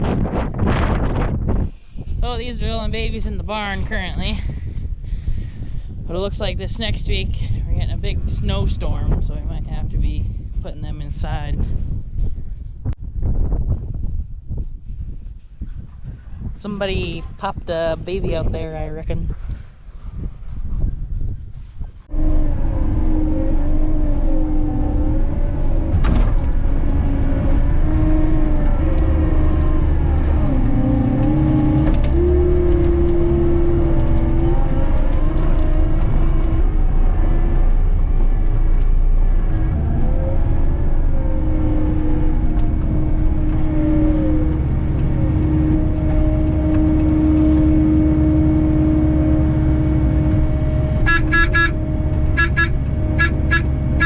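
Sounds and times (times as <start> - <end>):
skid steer engine running: 22.1 - 54.0
backup alarm beeping: 51.0 - 54.0.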